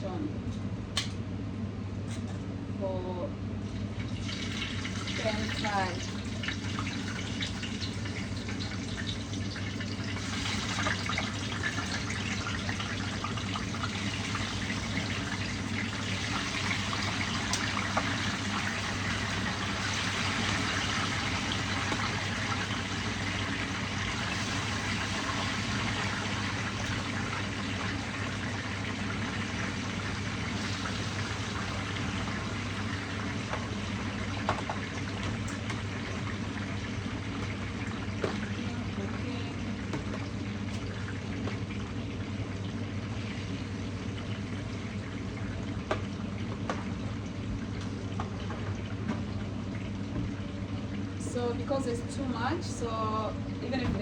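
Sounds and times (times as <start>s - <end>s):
fish sizzling in hot oil: 4.2s - 39.4s.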